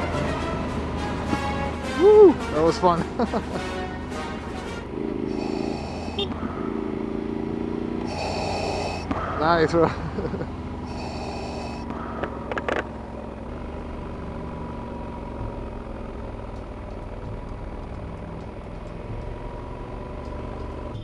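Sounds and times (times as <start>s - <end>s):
motorcycle engine running: 0.0s - 21.0s
wind and road noise: 0.0s - 21.0s.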